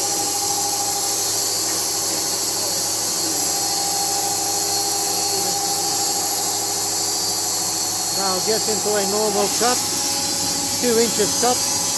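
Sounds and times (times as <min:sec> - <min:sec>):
sawmill high hiss: 0:05.0 - 0:11.9.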